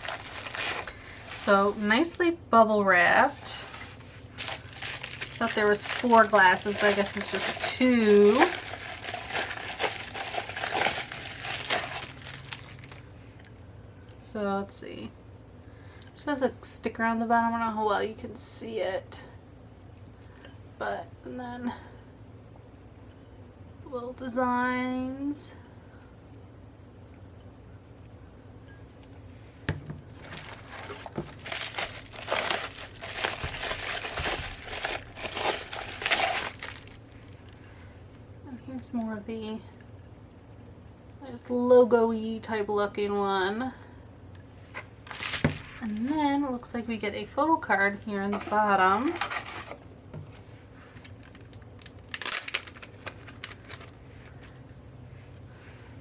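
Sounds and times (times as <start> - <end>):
bubble wrap crinkling: 0.0 - 2.0, 3.3 - 13.2, 30.1 - 37.6, 44.7 - 46.2, 48.3 - 49.8, 50.8 - 54.6.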